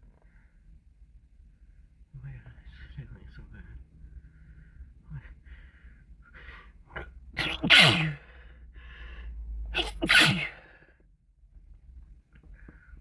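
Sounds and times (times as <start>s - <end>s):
catching breaths in: 4.2s - 6.8s, 8.2s - 9.6s
person sneezing: 7.0s - 8.3s, 9.8s - 10.7s.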